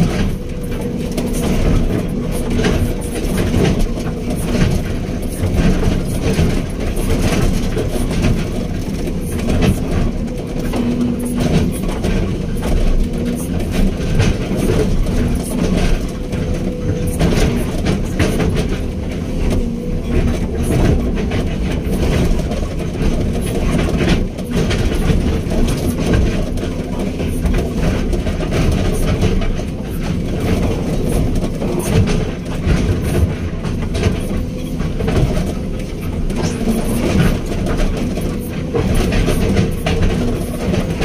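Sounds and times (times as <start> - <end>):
excavator diesel engine running: 0.0 - 41.0
machine clattering and rattling: 0.0 - 41.0.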